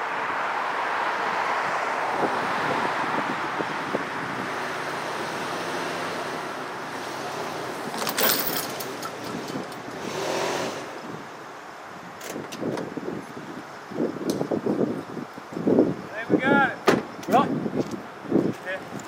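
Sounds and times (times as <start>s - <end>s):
wind on microphone: 1.2s - 5.4s, 12.0s - 19.0s
truck engine running under load: 3.8s - 13.0s.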